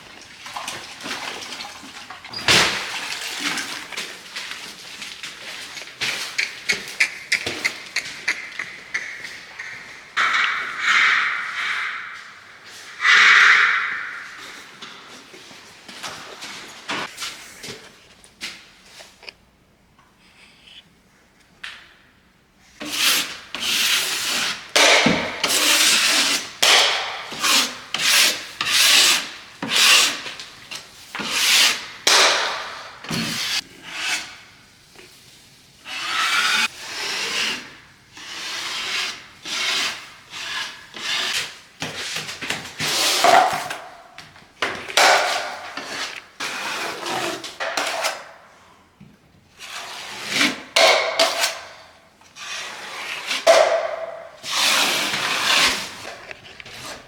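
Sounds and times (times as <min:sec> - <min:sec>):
hand tool rasping on drywall: 0:22.8 - 0:30.4, 0:31.2 - 0:34.4, 0:35.8 - 0:43.9, 0:45.0 - 0:48.4, 0:49.6 - 0:57.0.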